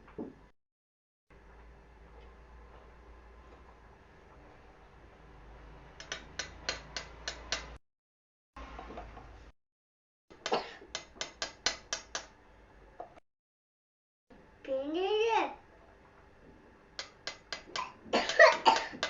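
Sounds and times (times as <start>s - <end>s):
rapid sharp clicks: 17.0s - 18.6s.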